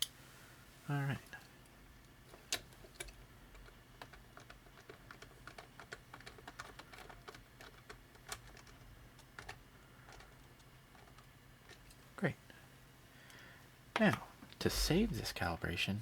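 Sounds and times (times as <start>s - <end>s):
small irregular clicks and ticks: 1.3s - 12.1s, 13.2s - 14.6s.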